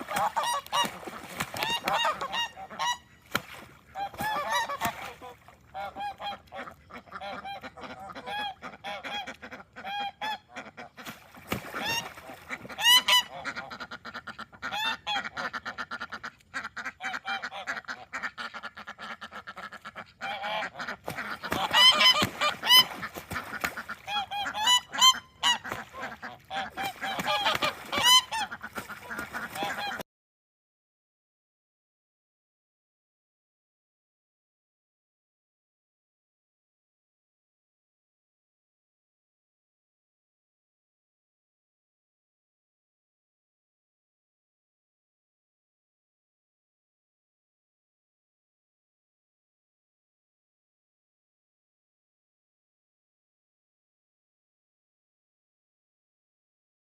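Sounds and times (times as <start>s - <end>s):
ducks and geese calling: 0.0s - 30.0s.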